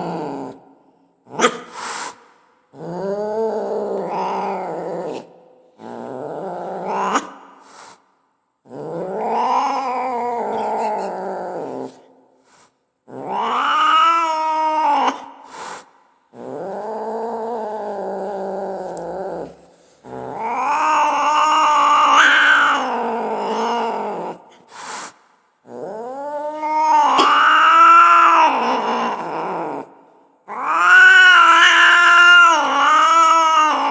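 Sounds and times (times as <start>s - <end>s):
angry cat yowling: 9.0s - 11.9s, 13.2s - 15.3s, 20.1s - 24.4s, 26.0s - 29.9s, 30.5s - 33.9s.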